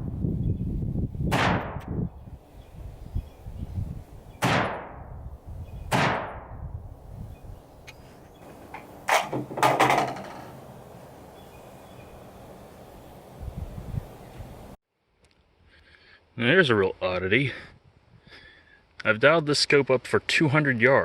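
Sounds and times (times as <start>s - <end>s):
gunshots echoing: 4.4s - 5.0s, 5.9s - 6.4s
clicks and knocks: 8.4s - 10.7s.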